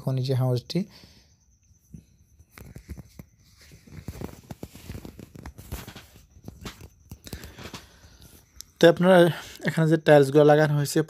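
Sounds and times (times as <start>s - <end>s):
footsteps: 2.7s - 8.0s.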